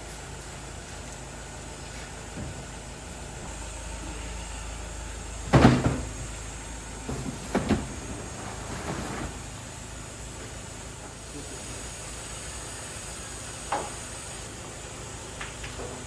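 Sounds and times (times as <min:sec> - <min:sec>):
steady low hum: 0:00.0 - 0:16.0.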